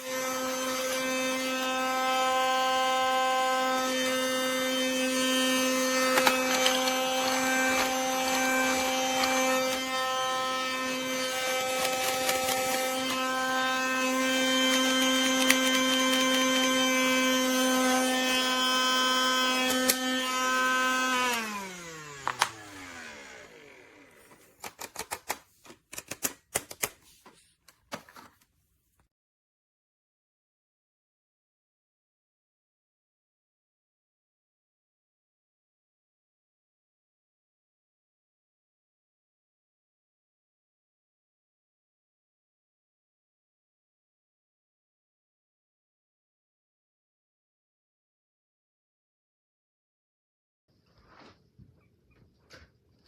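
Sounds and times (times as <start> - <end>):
toy vacuum motor whining: 0.0 - 25.4.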